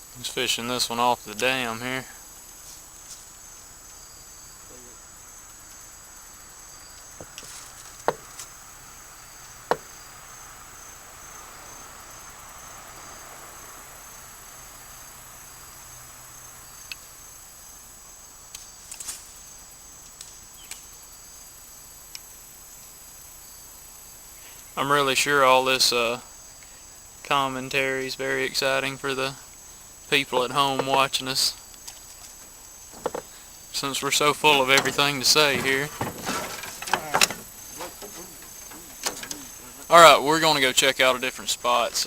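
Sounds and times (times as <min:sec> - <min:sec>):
insects trilling: 0:00.0 - 0:42.0
sharp clicks and knocks: 0:32.9 - 0:33.3, 0:34.5 - 0:39.6.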